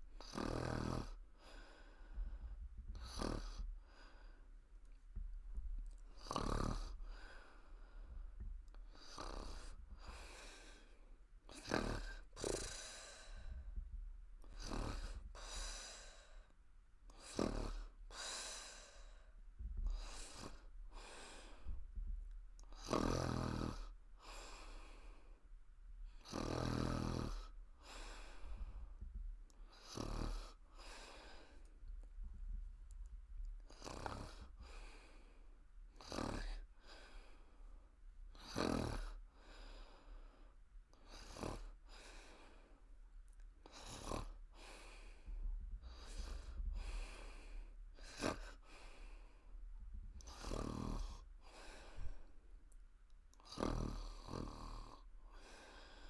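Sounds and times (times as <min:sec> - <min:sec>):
woman snoring: 0:00.2 - 0:01.2, 0:02.9 - 0:03.7, 0:06.2 - 0:07.0, 0:09.0 - 0:10.8, 0:11.5 - 0:13.6, 0:14.4 - 0:16.3, 0:17.2 - 0:19.2, 0:19.9 - 0:21.5, 0:22.7 - 0:25.0, 0:26.2 - 0:28.4, 0:29.7 - 0:31.5, 0:33.7 - 0:34.9, 0:36.0 - 0:36.9, 0:38.4 - 0:39.2, 0:41.0 - 0:42.2, 0:43.6 - 0:45.0, 0:45.9 - 0:47.4, 0:48.0 - 0:49.0, 0:50.2 - 0:52.2, 0:53.4 - 0:56.0.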